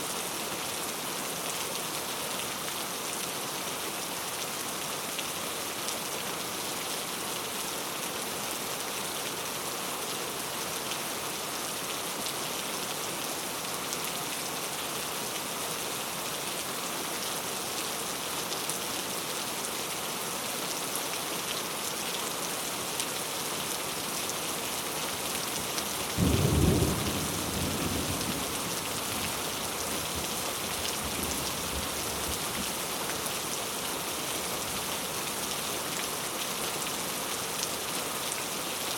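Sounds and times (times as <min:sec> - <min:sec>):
heavy rain pouring: 0:09.4 - 0:38.9.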